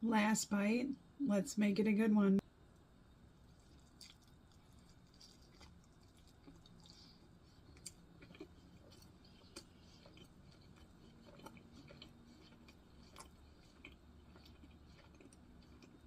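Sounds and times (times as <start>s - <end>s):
faint close-up chewing: 3.4s - 16.0s.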